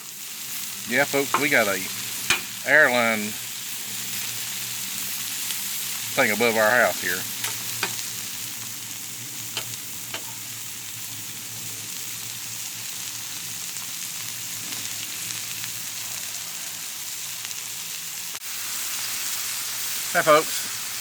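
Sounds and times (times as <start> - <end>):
food sizzling on a griddle: 0.0 - 21.0.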